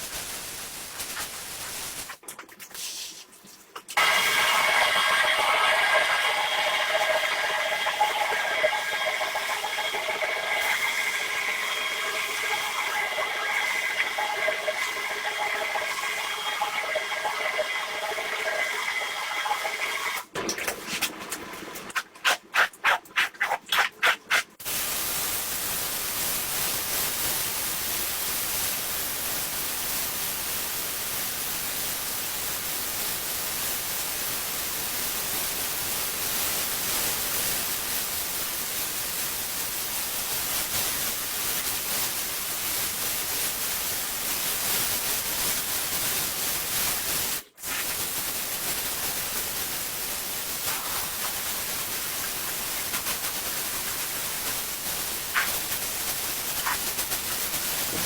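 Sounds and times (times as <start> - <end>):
hissing water spray: 35.0 - 58.0.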